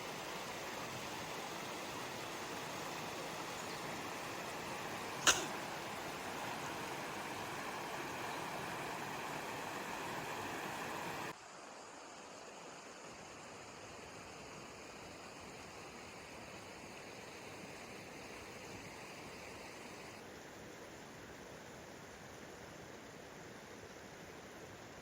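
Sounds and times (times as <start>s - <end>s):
steady rushing hiss: 0.0s - 25.0s
sharp click: 5.2s - 5.6s.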